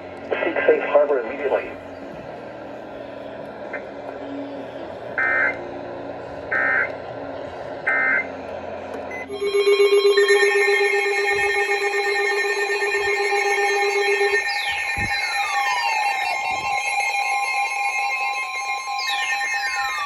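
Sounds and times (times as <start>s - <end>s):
broadcast hiss: 0.2s - 1.8s
end-of-message signal bursts: 9.1s - 15.1s
multi-pitch electronic alert tone: 9.1s - 18.6s.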